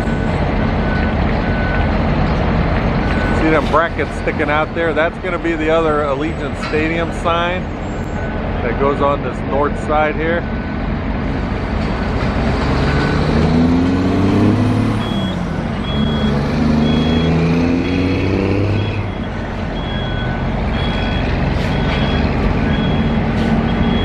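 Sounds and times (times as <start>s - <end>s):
heavy vehicle engine revving: 10.5s - 24.0s
lower-pitched beeper: 14.4s - 24.0s
backup alarm beeping: 14.8s - 24.0s.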